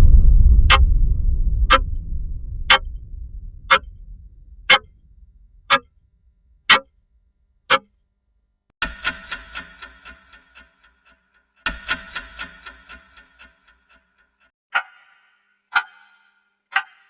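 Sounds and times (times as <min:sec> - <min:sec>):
low rumble: 0:00.0 - 0:07.2
fast ticking with pitched tones: 0:02.7 - 0:02.9, 0:04.7 - 0:04.9, 0:07.7 - 0:07.9, 0:08.8 - 0:14.9
clock ticking: 0:08.8 - 0:17.0.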